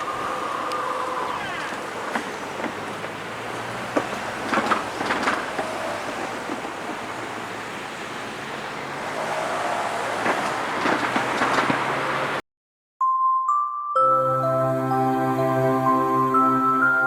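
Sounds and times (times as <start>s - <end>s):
sharp clicks of train wheels: 0.0s - 12.4s
train wheels on rail: 0.0s - 12.4s.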